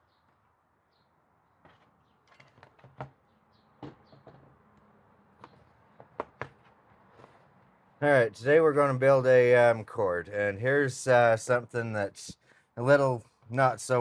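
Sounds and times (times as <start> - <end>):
faint bird chirps: 0.0 - 1.2.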